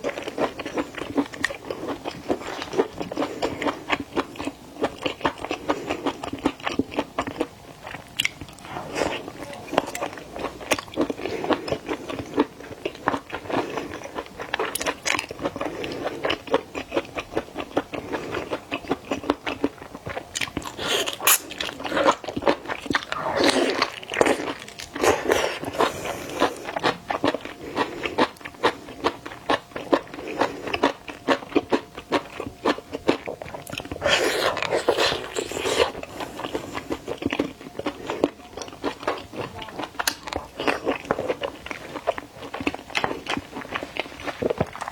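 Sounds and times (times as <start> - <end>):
crunchy chewing of seafood: 0.0 - 44.9.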